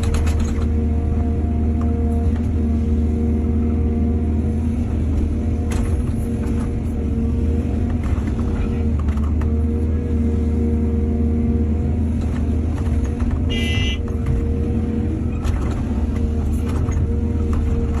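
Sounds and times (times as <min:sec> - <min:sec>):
knocks and clatter: 0:00.0 - 0:00.8, 0:12.2 - 0:14.5, 0:15.3 - 0:18.0
excavator diesel engine running: 0:00.0 - 0:18.0.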